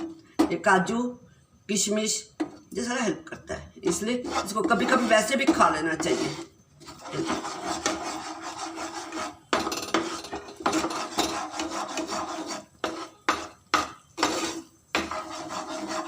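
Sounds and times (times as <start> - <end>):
utensil scraping sticky mixture in pan: 3.8 - 16.0.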